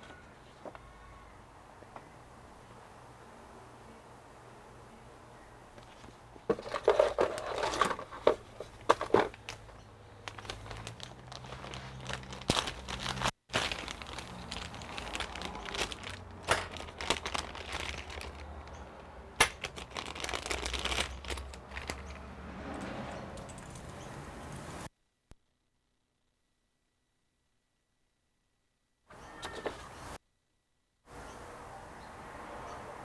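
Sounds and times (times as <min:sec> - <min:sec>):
packaging crinkling and rustling: 0:05.8 - 0:22.3
parts clicking and knocking: 0:05.8 - 0:24.7.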